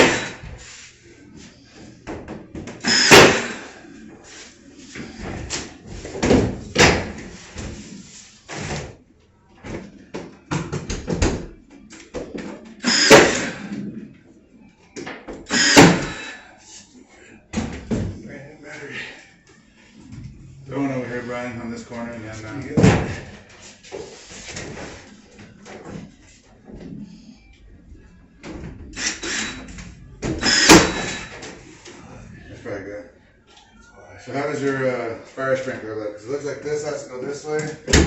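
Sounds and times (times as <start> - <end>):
nail gun bang with hiss: 0.0 - 0.4, 2.8 - 3.6, 12.9 - 13.6, 15.5 - 16.2, 30.4 - 31.2.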